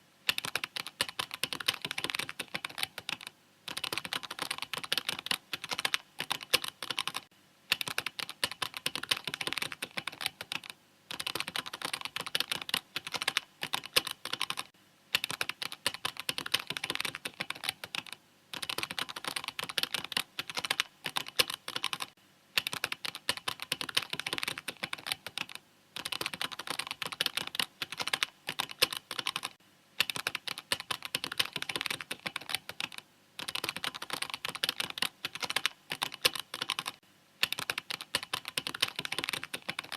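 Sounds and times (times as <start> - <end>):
mechanical keyboard typing: 0.3 - 39.9.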